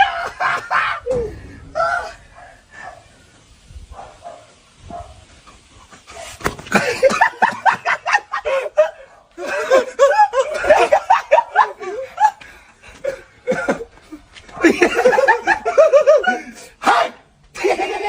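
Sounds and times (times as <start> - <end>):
people laughing hard: 0.0 - 2.2, 6.6 - 16.8, 17.5 - 18.0.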